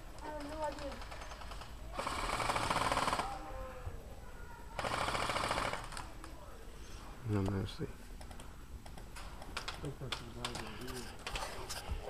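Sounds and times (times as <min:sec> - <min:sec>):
airsoft rifles firing bursts: 0:00.2 - 0:03.4, 0:04.8 - 0:06.1.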